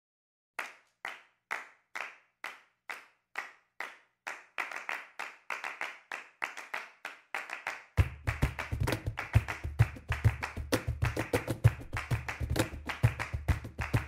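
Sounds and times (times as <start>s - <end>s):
rhythmic hand clapping: 0.6s - 14.0s.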